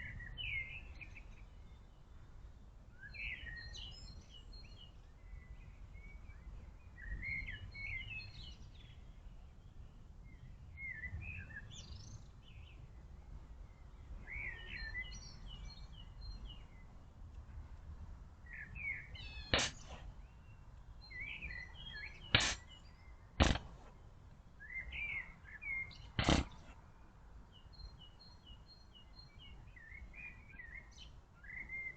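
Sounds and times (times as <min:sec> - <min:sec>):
small birds chirping: 0:00.0 - 0:17.6, 0:18.2 - 0:31.9
deer snorting: 0:19.5 - 0:20.1, 0:22.3 - 0:22.7, 0:23.4 - 0:23.9, 0:26.2 - 0:26.8.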